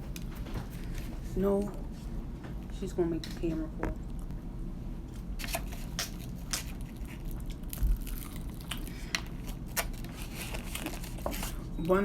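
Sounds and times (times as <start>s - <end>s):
crunchy chewing of fried chicken: 5.0s - 11.8s.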